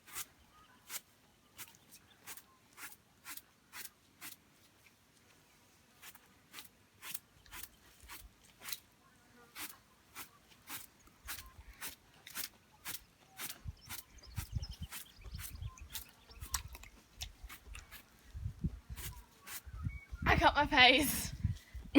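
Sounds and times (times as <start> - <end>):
scraper stroking wet wool: 0.0 - 5.0, 5.8 - 8.9, 9.5 - 19.8.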